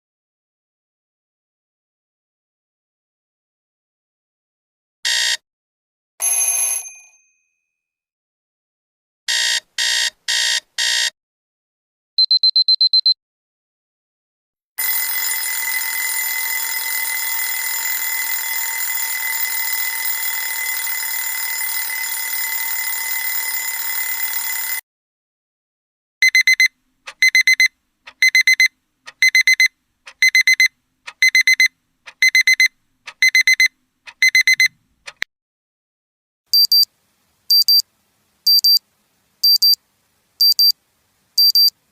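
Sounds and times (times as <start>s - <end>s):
alarm clock ringing: 14.8s - 24.8s
beeping alarm: 14.8s - 24.8s, 26.2s - 34.7s, 40.4s - 40.7s, 41.4s - 41.7s.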